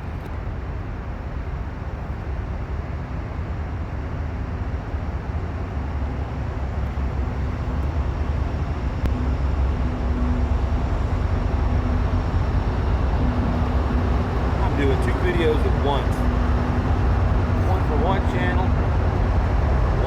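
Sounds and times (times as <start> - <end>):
freight train rumbling past: 0.0 - 20.0
faint steady hum: 0.7 - 20.0.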